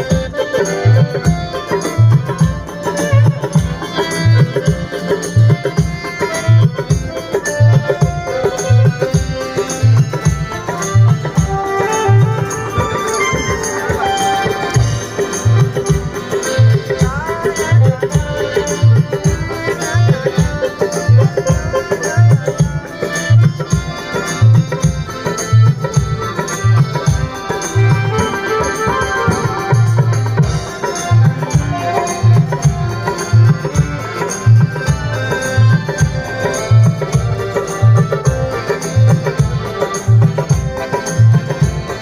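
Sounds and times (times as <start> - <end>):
drum-led music with bass drum: 0.0 - 42.0.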